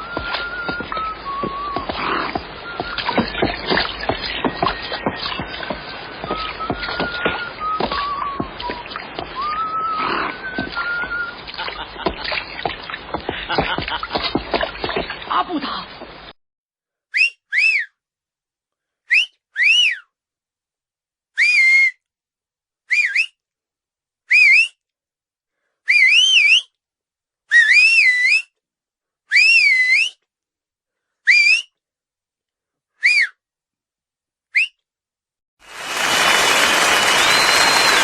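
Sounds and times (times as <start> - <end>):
person whistling: 0.0 - 12.0, 17.1 - 18.0, 19.1 - 20.1, 21.4 - 22.0, 22.9 - 23.4, 24.3 - 24.8, 25.9 - 26.7, 33.0 - 33.4, 34.6 - 34.8, 36.0 - 38.0.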